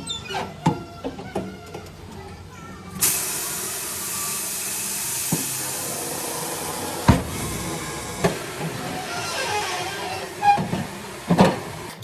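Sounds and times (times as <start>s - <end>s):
steady hiss: 3.0s - 12.0s.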